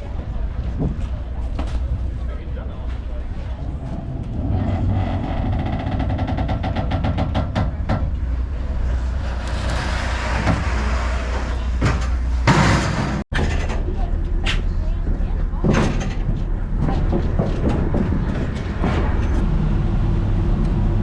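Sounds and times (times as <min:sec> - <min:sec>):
ferry engine low rumble: 0:00.0 - 0:21.0.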